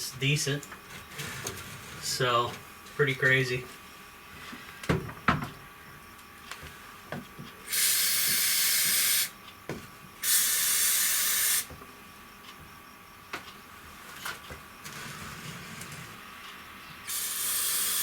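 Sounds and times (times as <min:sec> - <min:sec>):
aerosol spray can hissing: 0:07.7 - 0:09.3, 0:10.2 - 0:11.7, 0:17.1 - 0:18.0.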